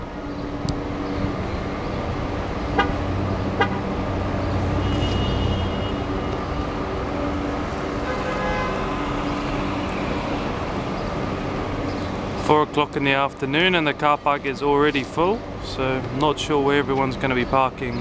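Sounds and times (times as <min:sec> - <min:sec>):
road traffic: 0:00.0 - 0:18.0
car horns tooting: 0:02.7 - 0:04.0, 0:04.8 - 0:06.3, 0:08.0 - 0:09.0.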